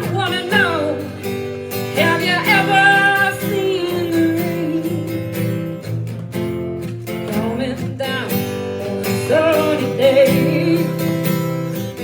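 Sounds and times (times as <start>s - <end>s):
person singing: 0.0s - 5.6s, 7.1s - 12.0s
strummed acoustic guitar: 0.0s - 12.0s.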